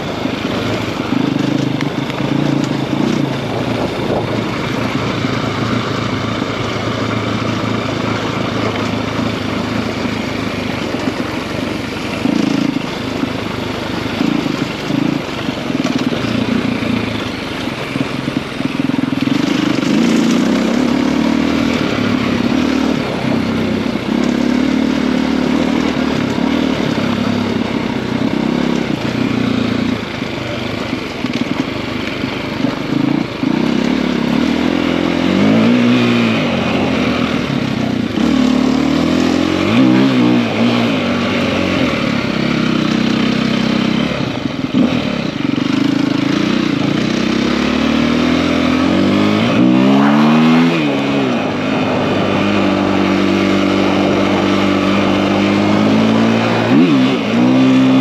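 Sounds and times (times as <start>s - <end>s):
dirt bike engine revving: 0.0s - 58.0s.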